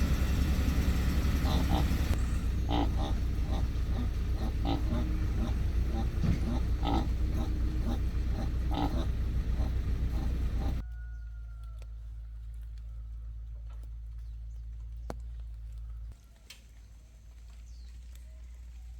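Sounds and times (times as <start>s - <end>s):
heavy diesel machinery rumbling: 0.0s - 10.8s
grunt-like vocal calls: 1.4s - 10.8s.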